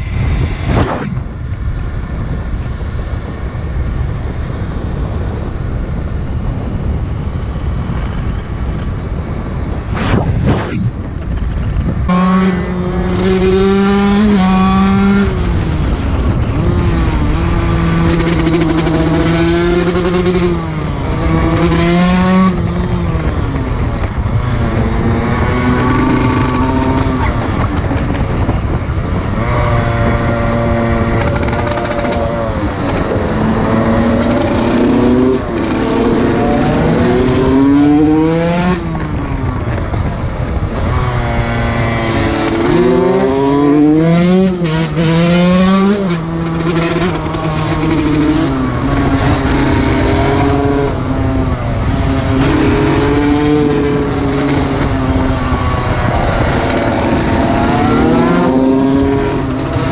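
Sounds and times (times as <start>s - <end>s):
two-stroke dirt bike engine revving: 12.1s - 23.4s, 24.5s - 39.9s, 40.8s - 59.9s.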